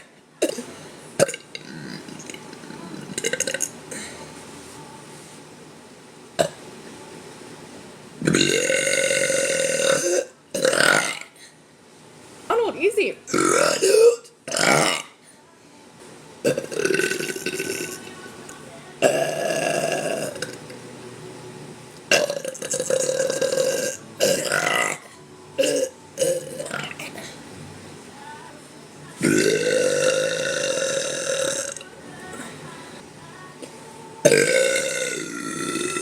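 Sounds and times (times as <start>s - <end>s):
faint background music: 0.0s - 36.0s
woman burping: 0.4s - 4.1s, 6.4s - 6.6s, 8.2s - 11.4s, 13.3s - 15.2s, 16.4s - 18.0s, 19.0s - 20.6s, 22.1s - 27.4s, 29.2s - 31.8s, 34.3s - 36.0s.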